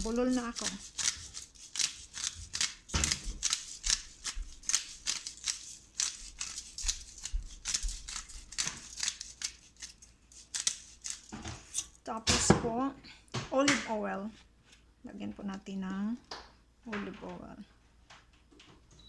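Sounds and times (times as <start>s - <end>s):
pepper grinder scratching: 0.0s - 12.0s.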